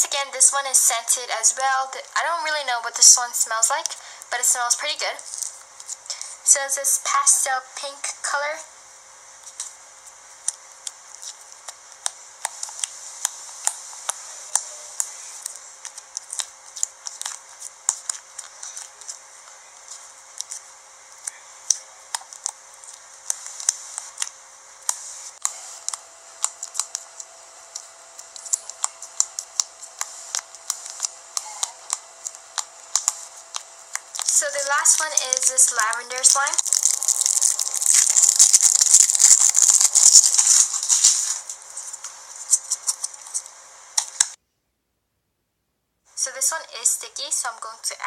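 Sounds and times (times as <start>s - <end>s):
slime squished by hand: 36.2s - 41.5s.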